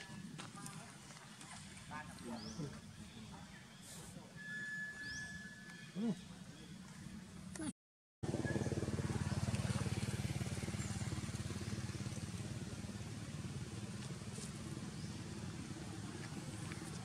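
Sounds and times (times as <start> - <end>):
motorcycle engine running: 8.2 - 17.0.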